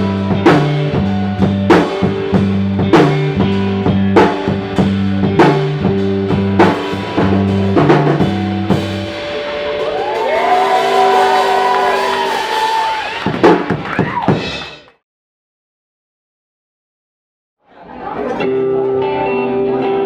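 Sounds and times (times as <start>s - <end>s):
electric guitars with sliding notes: 0.0s - 13.0s, 18.1s - 20.0s
bass guitar: 0.0s - 14.8s, 18.0s - 20.0s
drums: 0.0s - 15.0s.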